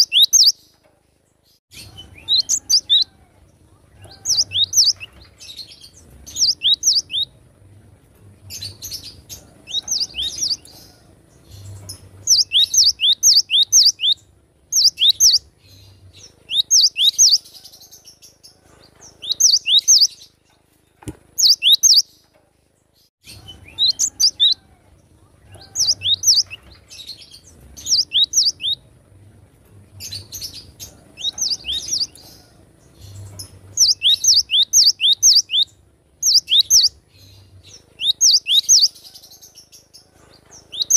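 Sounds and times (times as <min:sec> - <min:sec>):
bird singing high descending notes: 0:27.8 - 0:28.8, 0:33.8 - 0:37.0.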